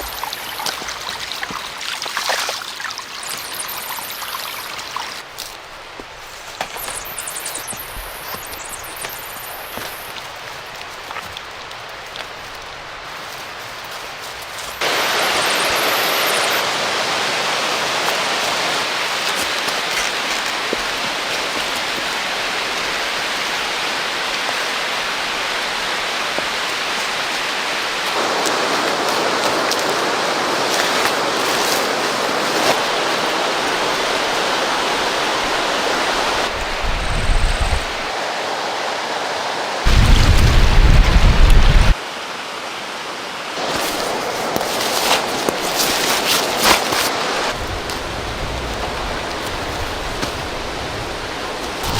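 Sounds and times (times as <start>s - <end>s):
rushing river water: 0.0s - 51.9s
low rumble bursts: 39.9s - 42.0s.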